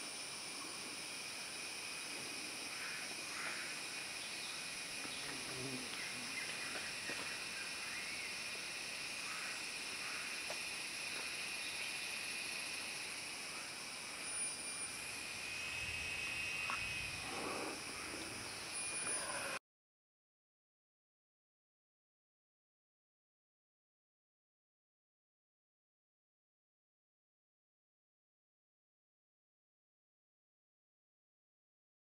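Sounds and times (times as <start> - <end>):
high-pitched insect drone: 0.0 - 19.6.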